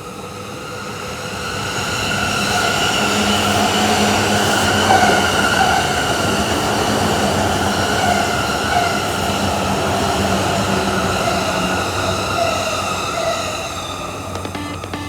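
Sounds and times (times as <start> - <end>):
train rail noise: 0.0 - 15.0
held tones: 14.4 - 15.0.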